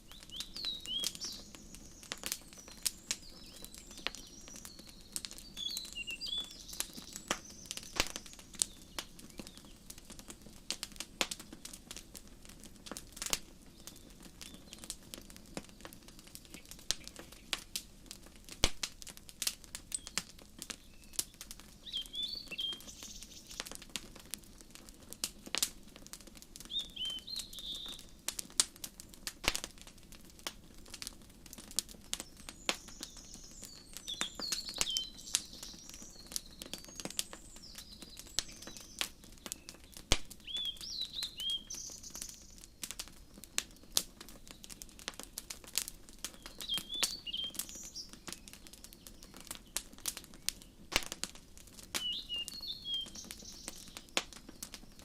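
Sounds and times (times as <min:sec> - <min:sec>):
birds chirping: 0:00.0 - 0:10.0, 0:13.6 - 0:17.7, 0:19.9 - 0:23.8, 0:26.6 - 0:28.2, 0:32.2 - 0:44.8, 0:46.2 - 0:50.8, 0:51.9 - 0:55.0
wood fire crackling and popping: 0:00.0 - 0:55.0.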